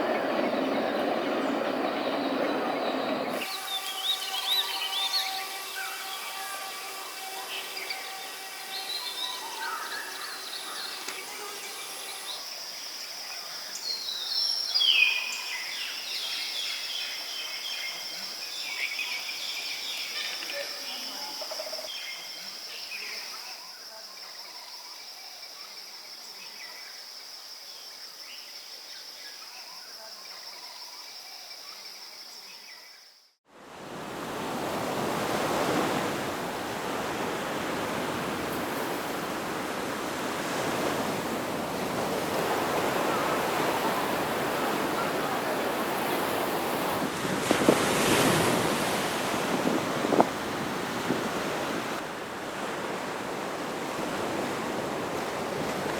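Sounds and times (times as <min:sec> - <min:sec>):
high insect drone: 0:03.3 - 0:13.8
ocean surf: 0:33.5 - 0:55.9.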